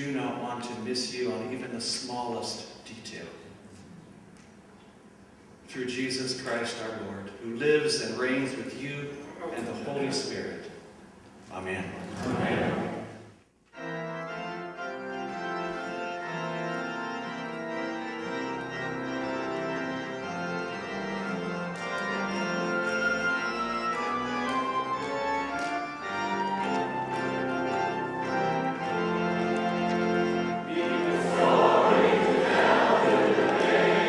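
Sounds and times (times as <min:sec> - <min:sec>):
choir singing: 0:12.0 - 0:13.3, 0:30.0 - 0:34.0
organ playing chords: 0:12.4 - 0:34.0.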